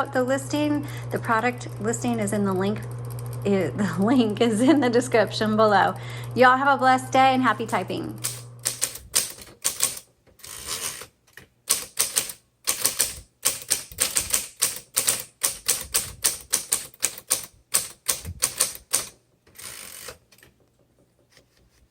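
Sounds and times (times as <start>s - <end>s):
typewriter keystroke clicks: 8.2s - 10.1s, 10.7s - 20.6s.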